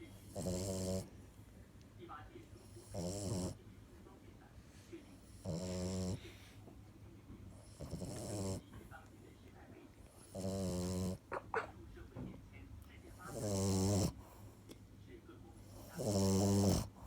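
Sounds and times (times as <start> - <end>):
dog snoring: 0.0 - 1.2, 2.6 - 3.6, 5.2 - 6.6, 7.6 - 8.8, 10.2 - 11.7, 13.1 - 14.5, 15.6 - 17.0
quiet breathing: 0.0 - 10.4, 12.9 - 16.1.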